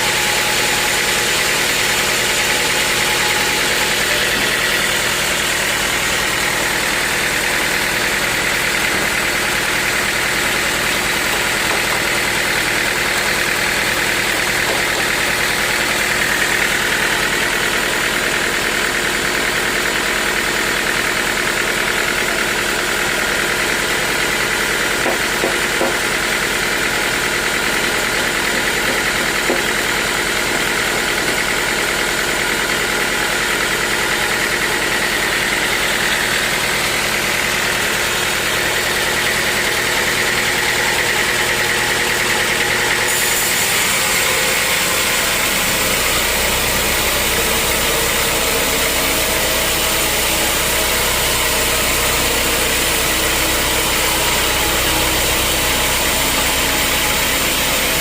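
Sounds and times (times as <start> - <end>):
machine whine: 0.0 - 18.4, 32.9 - 58.0
sawmill machinery drone: 0.0 - 58.0.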